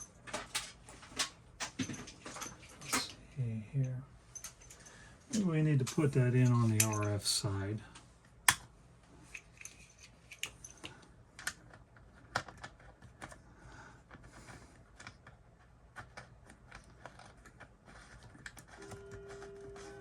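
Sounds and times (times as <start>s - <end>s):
connectors clicking and tapping: 9.3s - 13.4s.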